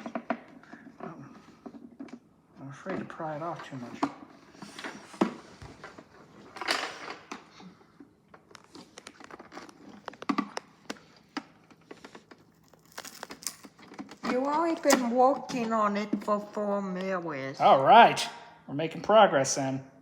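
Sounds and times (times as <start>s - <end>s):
plastic clicks and creaks: 7.2s - 15.7s
plastic scraping: 8.4s - 15.8s.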